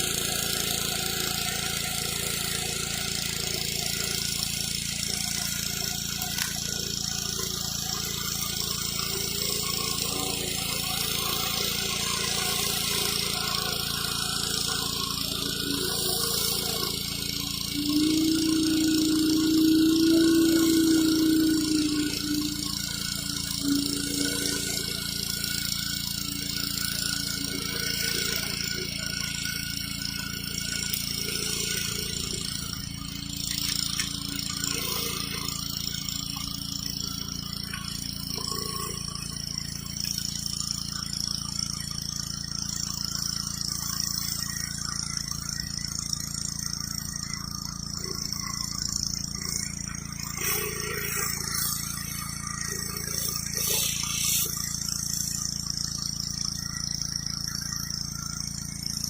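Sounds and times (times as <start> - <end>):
pressure washer engine running: 0.0 - 59.0
water jet hissing on concrete: 0.0 - 59.0.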